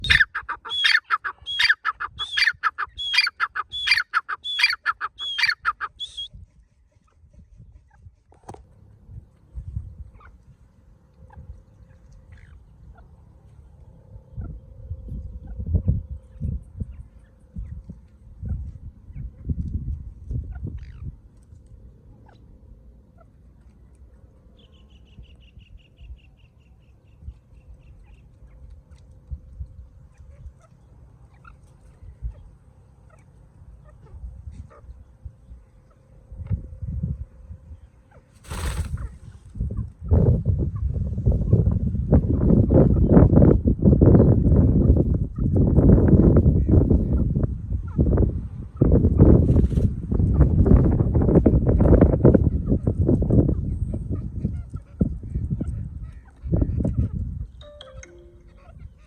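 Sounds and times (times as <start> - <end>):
francolin calling: 0.0 - 6.3
low rumble of wind: 0.0 - 59.0.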